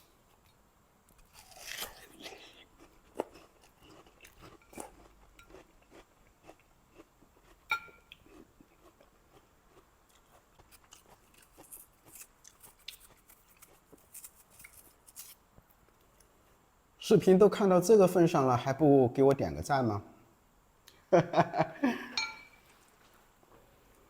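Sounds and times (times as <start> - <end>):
cups and dishes clicking: 22.2 - 22.6
ringing clink: 22.2 - 22.6.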